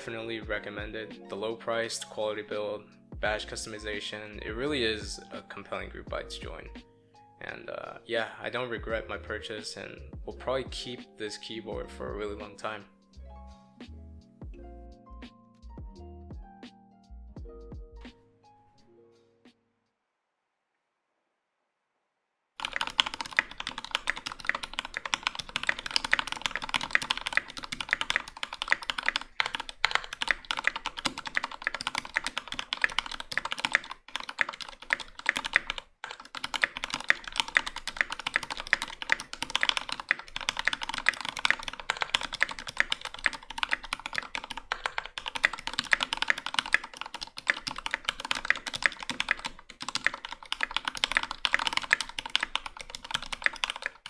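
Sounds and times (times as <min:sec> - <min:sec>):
mechanical keyboard typing: 0:22.6 - 0:54.0.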